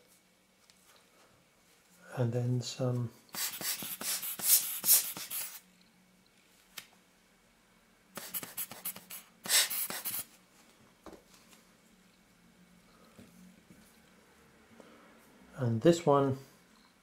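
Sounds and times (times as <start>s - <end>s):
scratchy rubbing handling noise: 3.4s - 5.6s, 8.2s - 10.4s.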